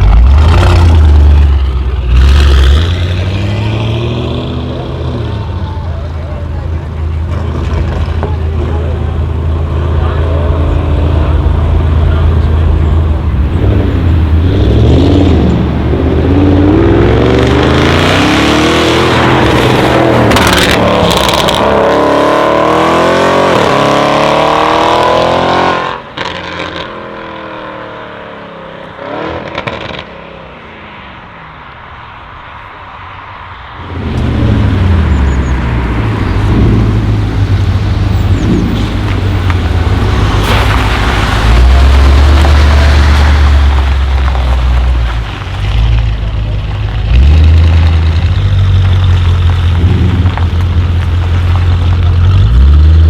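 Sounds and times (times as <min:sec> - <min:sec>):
car engine accelerating hard: 0:00.0 - 0:28.2, 0:33.8 - 0:53.0
exhaust crackles: 0:06.5 - 0:21.8, 0:33.8 - 0:53.0.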